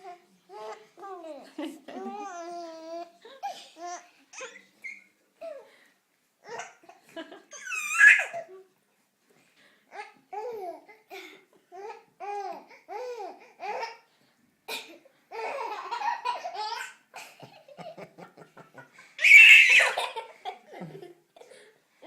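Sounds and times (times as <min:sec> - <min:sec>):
young children laughing: 0:01.4 - 0:02.4, 0:15.6 - 0:21.7
child squealing loudly: 0:07.6 - 0:08.3, 0:19.2 - 0:20.0.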